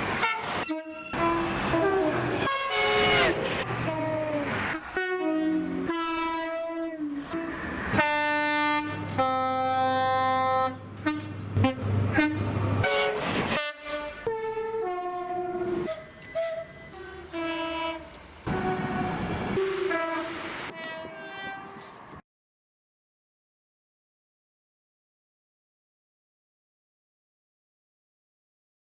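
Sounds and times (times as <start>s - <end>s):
train running noise: 0.0s - 22.2s
two-tone train horn blasts: 0.2s - 22.2s.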